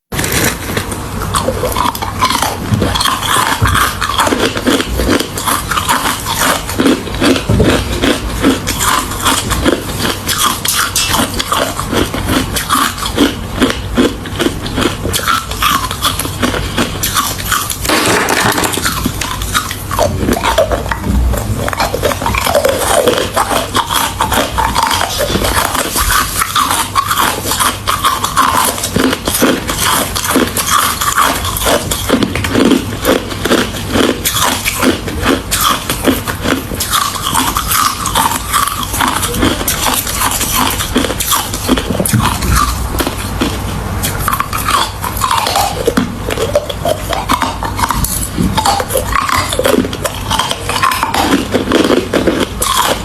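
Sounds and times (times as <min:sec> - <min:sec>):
chewing crunching ice: 0:00.1 - 0:53.0.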